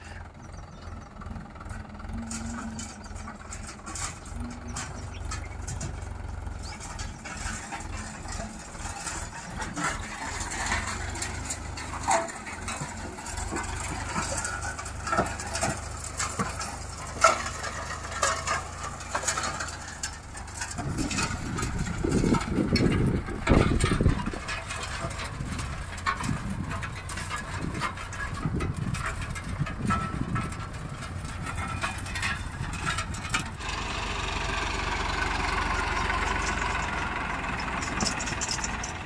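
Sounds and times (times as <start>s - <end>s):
diesel engine running: 0.0s - 39.0s.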